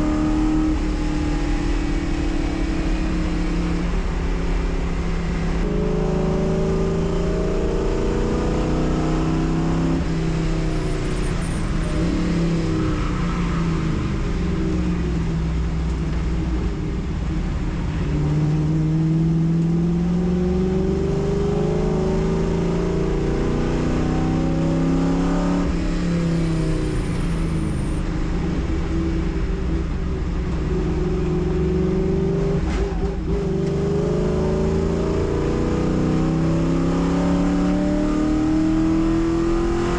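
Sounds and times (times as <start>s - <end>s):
race car engine revving: 17.8s - 39.9s.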